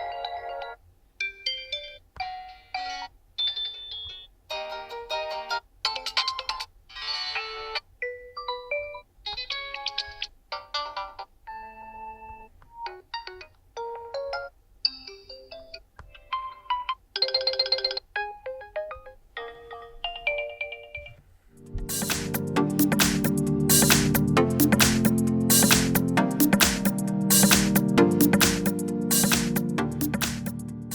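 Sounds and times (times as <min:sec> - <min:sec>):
bass-heavy music: 0:21.6 - 0:30.9.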